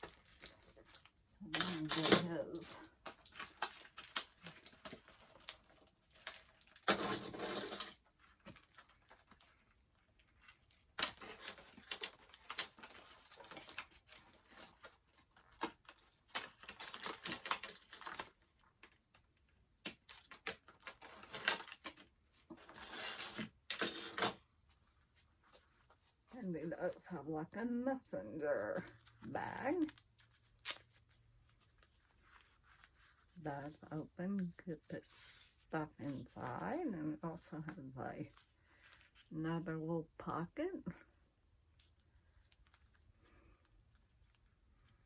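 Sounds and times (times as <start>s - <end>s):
packaging rustling and crinkling: 0.0s - 7.4s, 8.0s - 27.0s, 28.8s - 33.9s.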